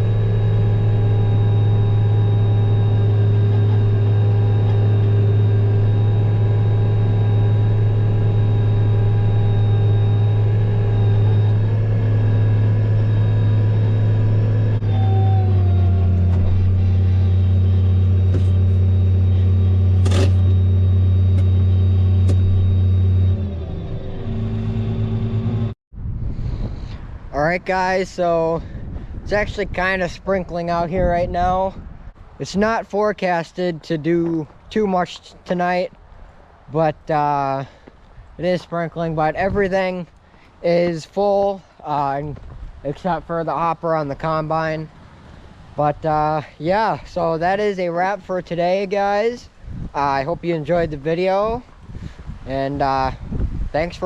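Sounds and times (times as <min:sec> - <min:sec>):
heavy machinery engine running: 0:00.0 - 0:25.8.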